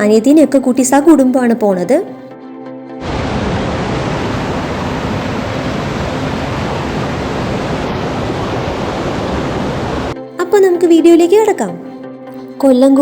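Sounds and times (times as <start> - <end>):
waterfall rushing: 3.0 - 10.2.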